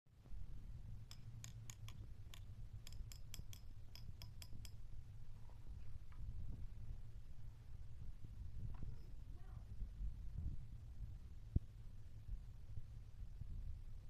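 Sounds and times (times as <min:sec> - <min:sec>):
low steady rumble: 0:00.1 - 0:14.0
sharp small clicks: 0:01.0 - 0:04.8.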